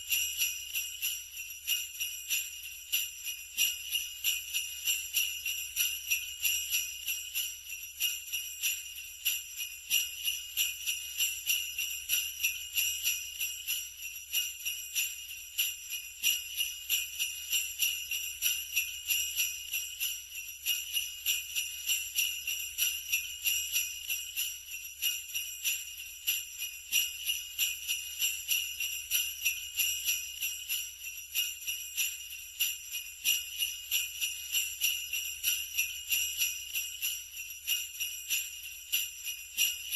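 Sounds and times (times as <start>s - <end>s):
sleigh bells jingling: 0.0s - 39.9s.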